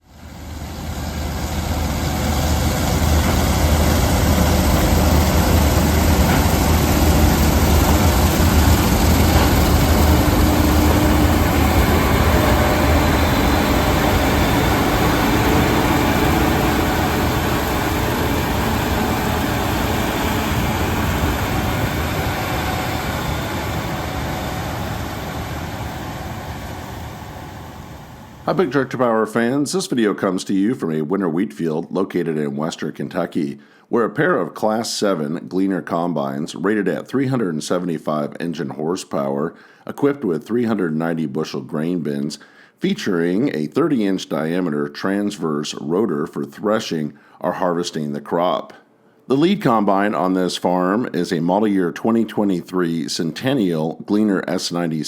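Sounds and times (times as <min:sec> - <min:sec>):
combine harvester engine rumble: 0:00.1 - 0:28.8.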